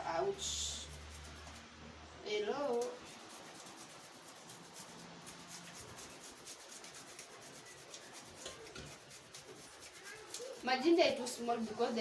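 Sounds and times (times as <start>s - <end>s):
ginger grated on hand grater: 2.8s - 12.0s.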